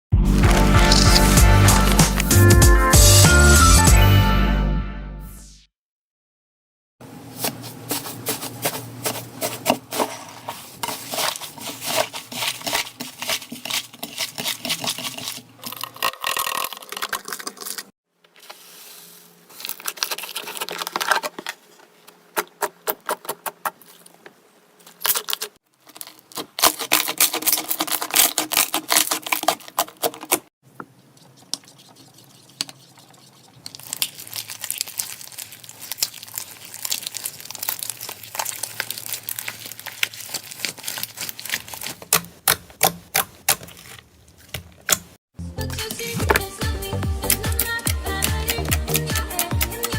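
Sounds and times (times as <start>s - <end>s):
slime squeezed by hand: 0.3s - 2.4s, 31.4s - 43.9s.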